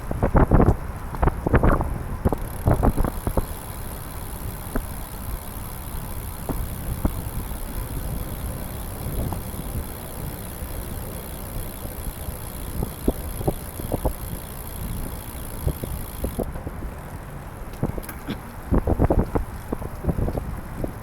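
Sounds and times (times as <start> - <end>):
road and wind rumble: 0.0 - 21.0
sharp clicks: 2.3 - 16.4.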